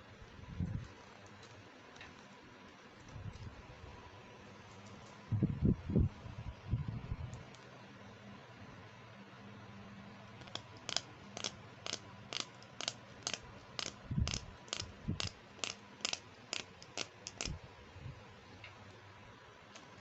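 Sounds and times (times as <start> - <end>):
crisp plastic clicks: 10.4 - 17.6.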